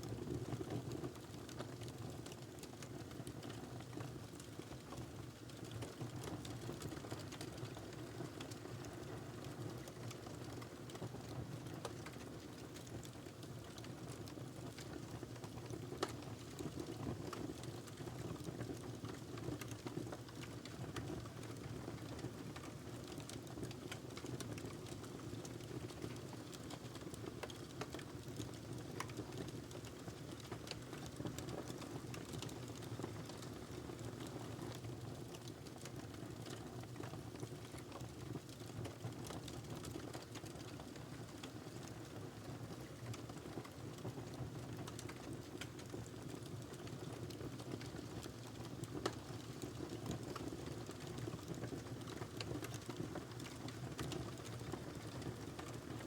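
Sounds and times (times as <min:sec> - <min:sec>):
log fire crackling: 0:25.6 - 0:34.8, 0:44.7 - 0:55.8.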